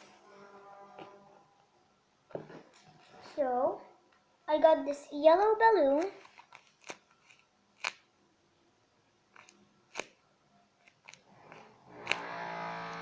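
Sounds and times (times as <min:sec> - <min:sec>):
paper squishy crinkling: 0:05.9 - 0:08.0.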